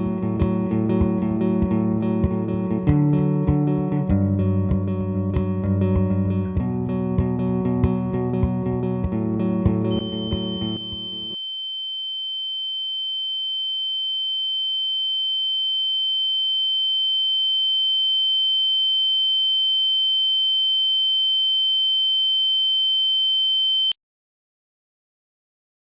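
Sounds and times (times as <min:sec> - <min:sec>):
high-pitched electronic tone: 0:09.9 - 0:11.4
fainter lower tone: 0:09.9 - 0:15.6.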